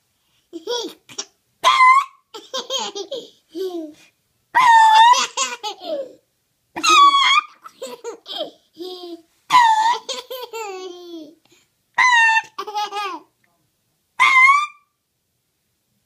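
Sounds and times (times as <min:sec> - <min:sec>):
baby laughing and squealing: 0:00.6 - 0:04.0, 0:04.6 - 0:06.2, 0:06.8 - 0:11.4, 0:12.0 - 0:13.3, 0:14.2 - 0:14.8.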